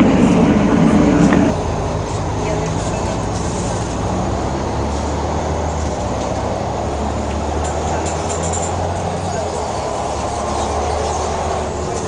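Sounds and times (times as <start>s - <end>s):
bus diesel engine droning: 0.0s - 12.0s.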